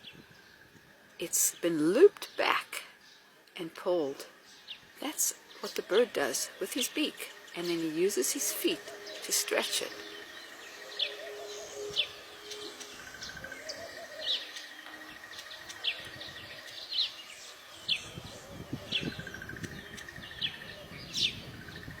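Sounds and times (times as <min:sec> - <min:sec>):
birds chirping: 0:00.0 - 0:22.0
buzzy bird trills: 0:05.0 - 0:22.0.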